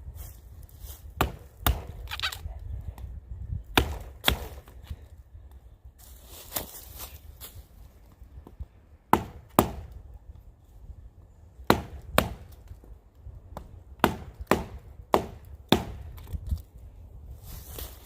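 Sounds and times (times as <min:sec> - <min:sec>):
knife chopping into dry wood: 0:01.1 - 0:02.5, 0:03.7 - 0:04.9, 0:09.1 - 0:09.9, 0:11.7 - 0:12.7, 0:13.5 - 0:16.5.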